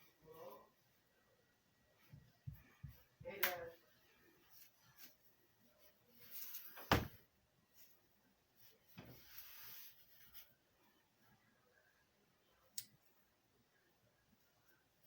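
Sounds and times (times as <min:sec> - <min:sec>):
handling rubbing and rustling: 0:02.0 - 0:11.0.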